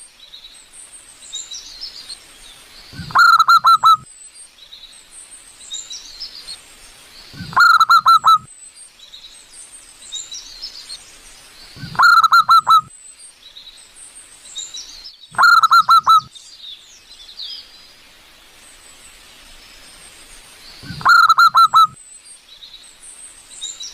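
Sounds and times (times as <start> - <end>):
small birds twittering: 0.0 - 23.9
dove cooing: 3.0 - 4.0, 7.4 - 8.5, 11.8 - 12.9, 15.4 - 16.3, 20.8 - 22.0.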